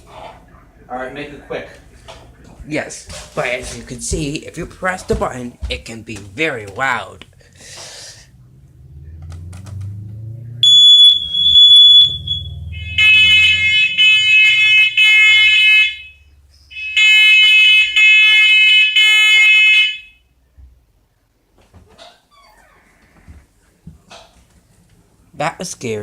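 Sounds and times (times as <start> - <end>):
smoke alarm shrill beeps: 10.6 - 20.3.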